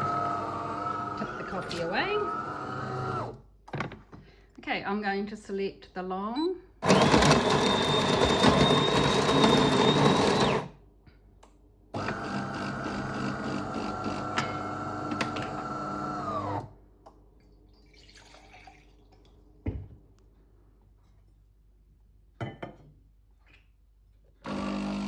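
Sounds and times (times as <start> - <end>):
coffee grinder running: 0.0 - 3.3, 6.8 - 10.7, 12.0 - 16.6, 24.4 - 25.0
coffee machine motor: 0.0 - 3.3, 6.8 - 10.7, 12.0 - 16.7, 24.4 - 25.0.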